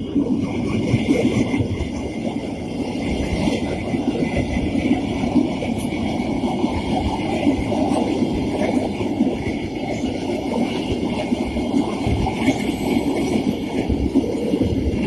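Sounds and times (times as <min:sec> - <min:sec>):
train rumbling past: 0:00.0 - 0:15.0.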